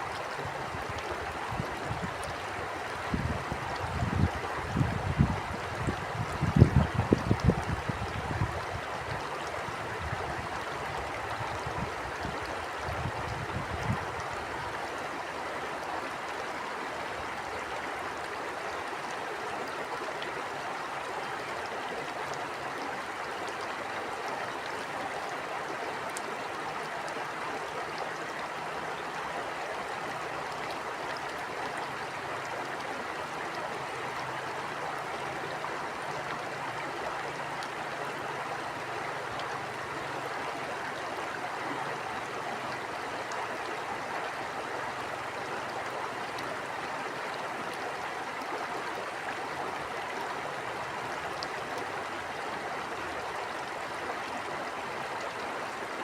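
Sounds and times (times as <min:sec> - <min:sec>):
stream water flowing: 0:00.0 - 0:56.0
wind rumbling on microphone: 0:00.4 - 0:02.4, 0:03.0 - 0:14.5.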